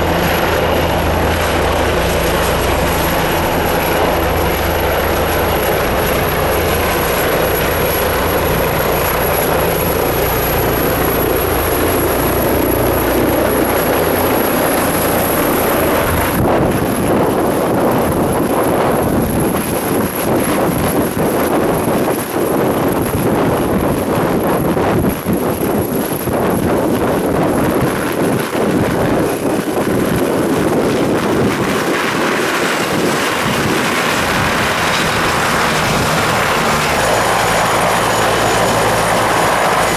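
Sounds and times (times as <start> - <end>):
helicopter rotor and engine: 0.0 - 39.9
high turbine whine: 0.0 - 39.9.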